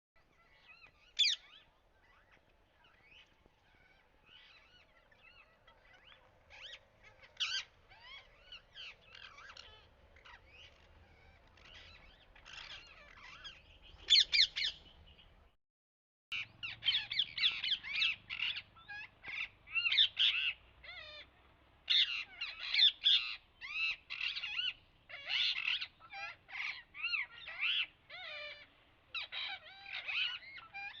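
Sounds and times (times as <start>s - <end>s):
parrots calling: 0.2s - 14.9s, 16.4s - 21.3s, 21.9s - 31.0s.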